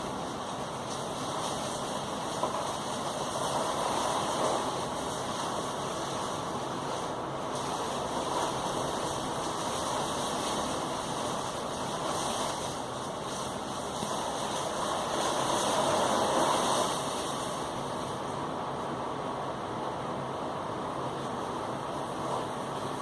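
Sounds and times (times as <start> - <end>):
heavy rain pouring: 0.0 - 23.0.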